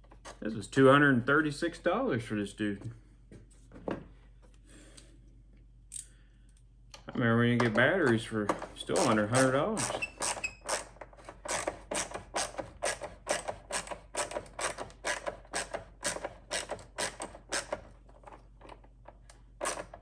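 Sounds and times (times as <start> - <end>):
ratchet wrench clicking: 5.9 - 6.1, 9.0 - 17.8.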